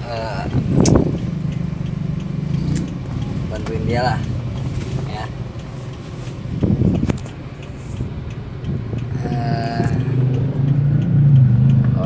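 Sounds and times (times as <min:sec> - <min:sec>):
vehicle engine humming: 0:00.0 - 0:12.0.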